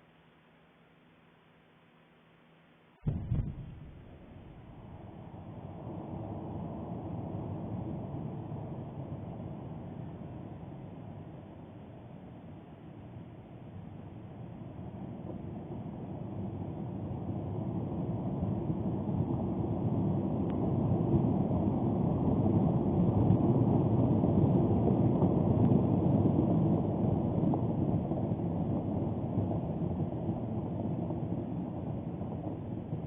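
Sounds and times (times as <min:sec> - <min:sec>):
volcanic explosion rumble: 0:03.1 - 0:09.5, 0:20.8 - 0:33.0.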